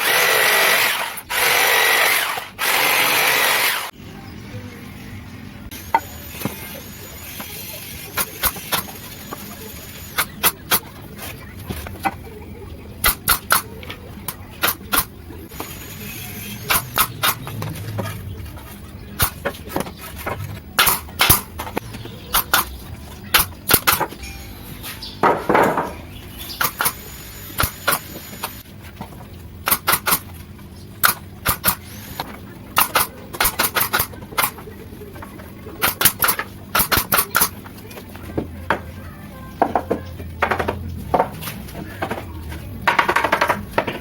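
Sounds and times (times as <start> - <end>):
tools knocking and clinking: 42.8 - 44.0.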